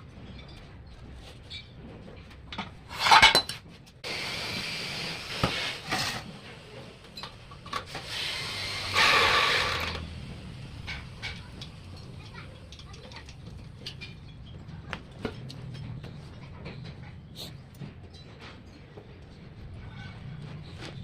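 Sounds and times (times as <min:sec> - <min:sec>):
metal tools clinking: 0:02.9 - 0:03.6.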